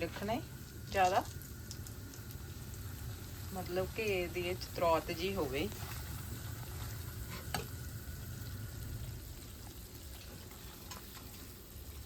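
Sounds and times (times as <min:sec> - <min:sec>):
flour sizzling in ghee: 0:00.0 - 0:12.0.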